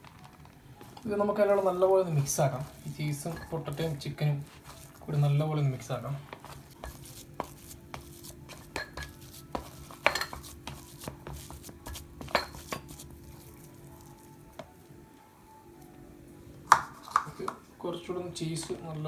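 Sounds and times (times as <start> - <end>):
utensil scraping a bowl: 0.8 - 14.2.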